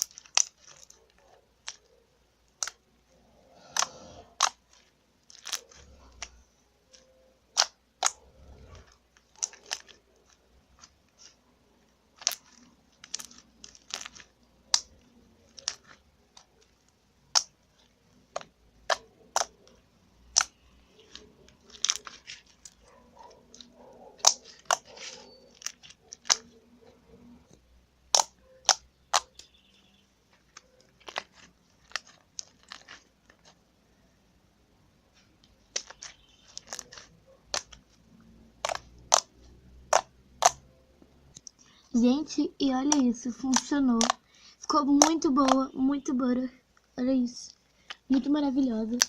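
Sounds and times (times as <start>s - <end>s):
sticky slime pops and clicks: 17.3s - 17.6s, 20.3s - 20.6s, 28.1s - 29.5s, 38.6s - 39.3s, 39.9s - 40.6s, 42.9s - 44.2s, 45.0s - 45.7s.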